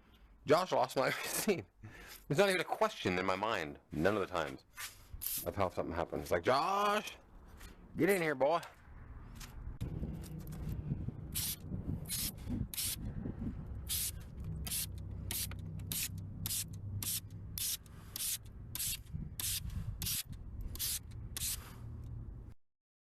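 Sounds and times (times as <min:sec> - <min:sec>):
spray bottle squirts hissing: 0:11.4 - 0:13.0, 0:13.9 - 0:21.8.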